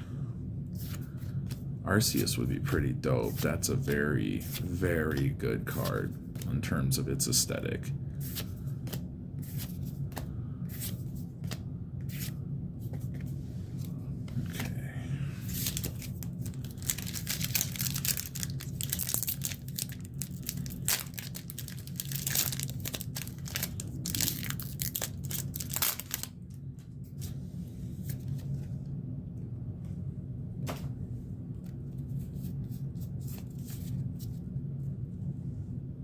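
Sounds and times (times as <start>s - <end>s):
steady low hum: 0.0s - 36.0s
foil wrapper crinkling and tearing: 15.6s - 26.4s.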